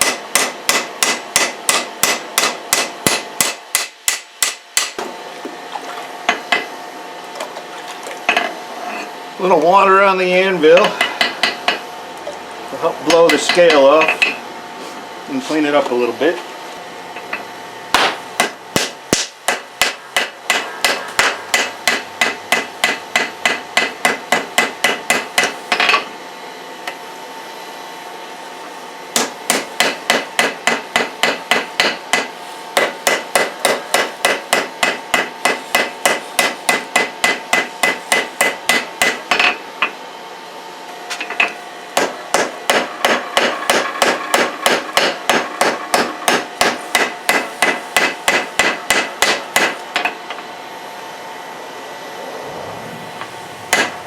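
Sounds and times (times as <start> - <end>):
hammer striking steel on anvil: 0.0 - 5.0, 17.2 - 26.0, 29.2 - 39.6, 41.3 - 50.2, 53.7 - 54.0.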